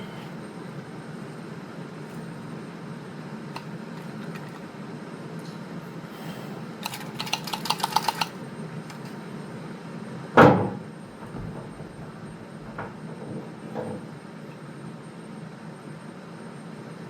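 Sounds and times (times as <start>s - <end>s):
faint knocks: 10.4s - 14.1s
low hum: 10.7s - 14.5s.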